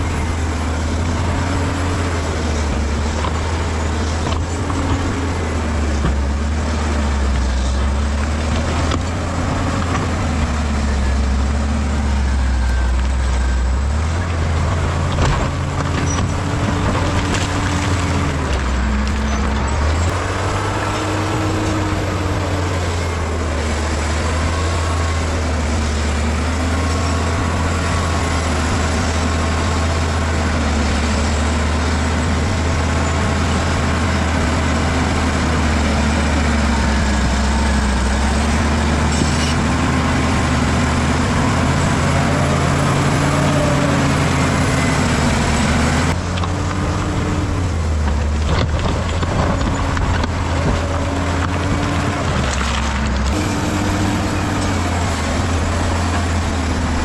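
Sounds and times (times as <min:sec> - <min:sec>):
diesel engine under load: 0:00.0 - 0:57.0.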